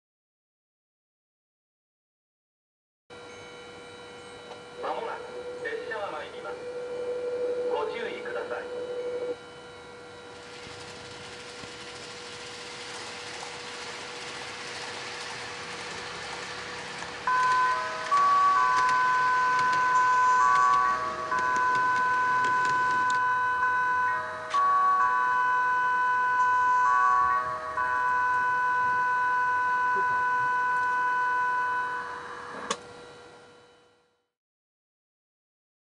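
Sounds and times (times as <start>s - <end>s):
faint steady tone: 3.1s - 12.2s, 17.2s - 34.2s
steady electronic note: 4.5s - 33.9s
model train running hiss: 10.2s - 23.0s.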